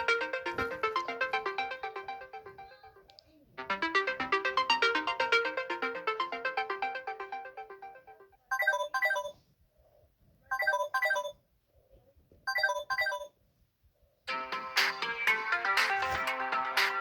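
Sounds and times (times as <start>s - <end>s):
fast melodic ringtone: 0.0s - 3.0s, 3.6s - 9.3s.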